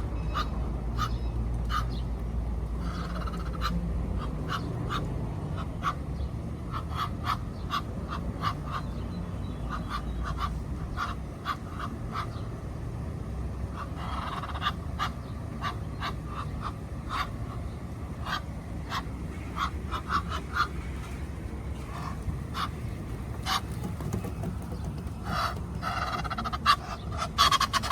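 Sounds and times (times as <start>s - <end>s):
ducks quacking: 0.0s - 2.0s, 9.6s - 12.4s, 13.7s - 27.9s.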